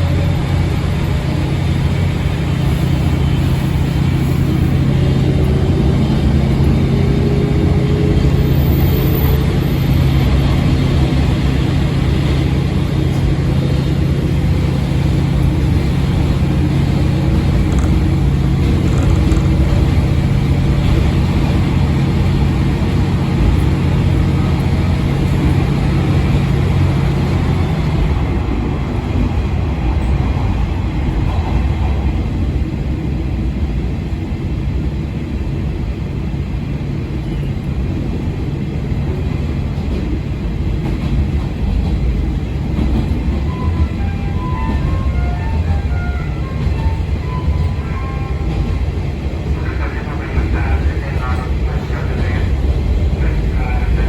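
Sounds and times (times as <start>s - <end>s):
diesel railcar engine drone: 0.0s - 54.0s.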